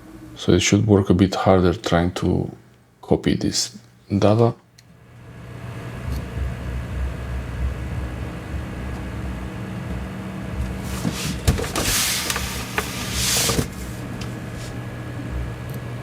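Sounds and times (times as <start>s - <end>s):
hard drive humming: 0.0s - 3.0s, 3.9s - 16.0s
scratchy drive noise with clicks: 6.0s - 16.0s.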